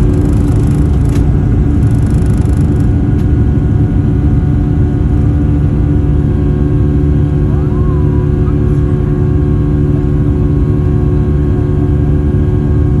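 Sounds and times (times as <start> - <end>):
jet engines at takeoff power: 0.0 - 13.0.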